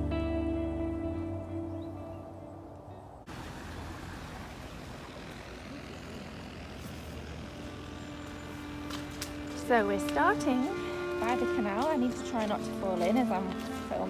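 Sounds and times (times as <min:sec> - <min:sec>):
soft music: 0:00.0 - 0:03.3, 0:08.0 - 0:14.0
outdoor hiss: 0:03.3 - 0:10.0.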